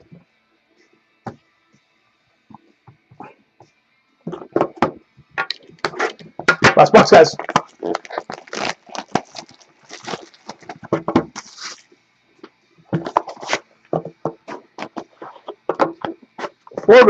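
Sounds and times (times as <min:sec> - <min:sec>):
plastic shrink wrap crinkling: 0:07.0 - 0:11.9
cardboard scraping and clicking: 0:13.0 - 0:16.7.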